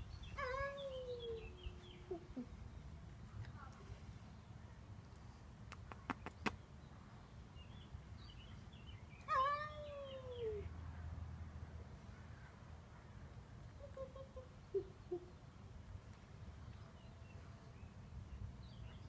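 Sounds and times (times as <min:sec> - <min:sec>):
sharp clicks: 0:05.7 - 0:06.6.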